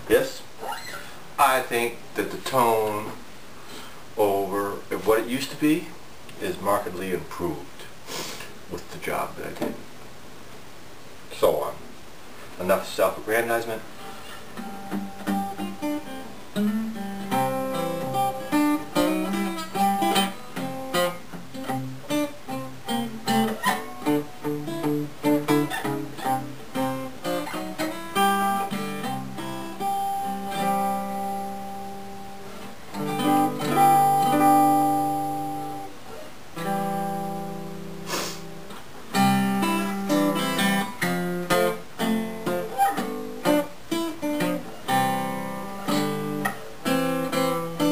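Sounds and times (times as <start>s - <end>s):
acoustic guitar picked notes: 13.0s - 47.9s
strummed guitar chords: 14.0s - 35.9s, 36.6s - 47.9s.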